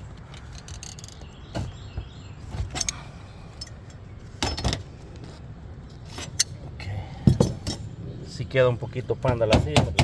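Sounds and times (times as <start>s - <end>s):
metallic clinks and rattles: 0.3s - 1.2s.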